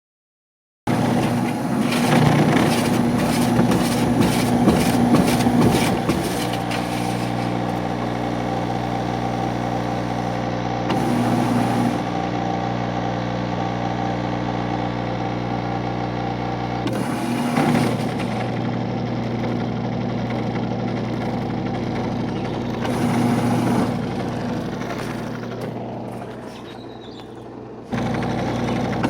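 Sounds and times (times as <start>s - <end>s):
rapid rattling clatter: 0.9s - 10.4s, 20.4s - 29.0s
washing machine motor humming: 0.9s - 29.0s.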